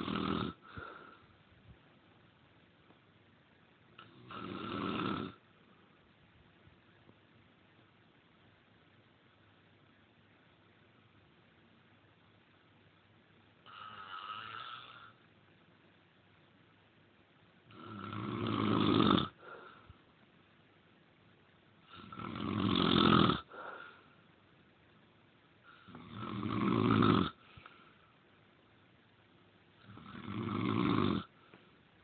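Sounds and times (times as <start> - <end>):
loud snoring: 0.0 - 0.8, 4.0 - 5.4, 13.6 - 15.2, 17.7 - 19.6, 21.9 - 23.8, 25.8 - 27.4, 29.8 - 31.3
faint breath: 0.6 - 1.4, 19.4 - 20.0, 23.5 - 24.2, 27.4 - 28.3.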